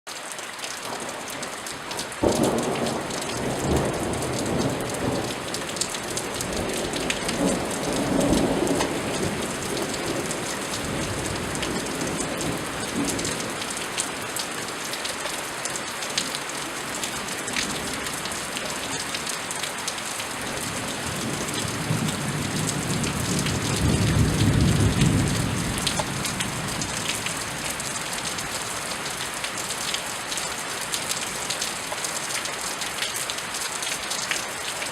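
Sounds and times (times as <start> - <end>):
steady rain falling: 0.1 - 34.9
raindrops ticking: 0.6 - 34.9
thunder crack and rumble: 2.2 - 13.8, 20.6 - 27.9.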